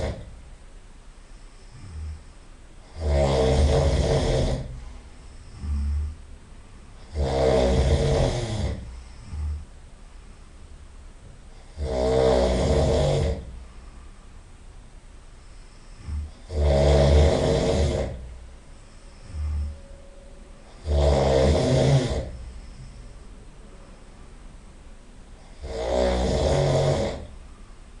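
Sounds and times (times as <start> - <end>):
person snoring loudly: 0.0 - 0.3, 1.6 - 6.2, 7.0 - 9.7, 11.5 - 13.6, 15.6 - 18.3, 19.1 - 19.8, 20.7 - 23.1, 25.4 - 27.4.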